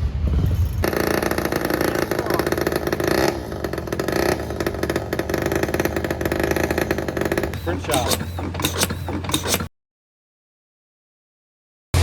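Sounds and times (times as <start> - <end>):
small engine running fast: 0.8 - 9.7.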